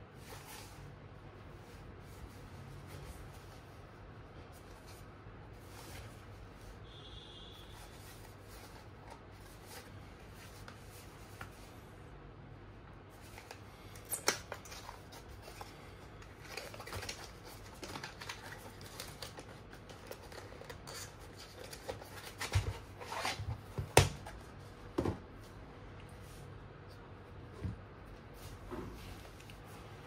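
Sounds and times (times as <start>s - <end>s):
rustling while unpacking: 13.1s - 24.7s.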